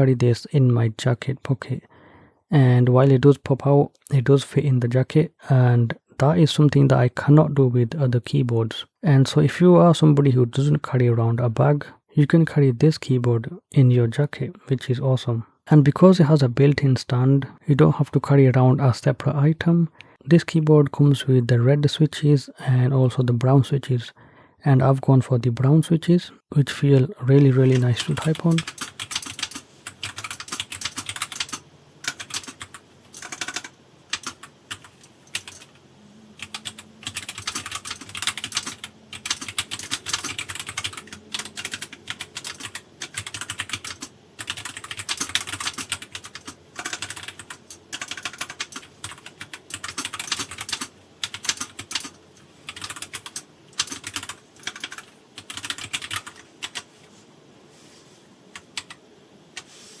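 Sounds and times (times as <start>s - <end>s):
mechanical keyboard typing: 27.4s - 35.7s, 36.4s - 56.8s, 58.6s - 59.0s.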